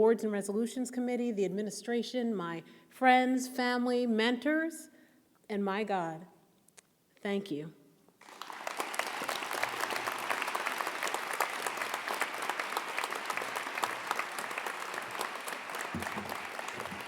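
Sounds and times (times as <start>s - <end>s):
audience applauding: 8.2s - 17.0s.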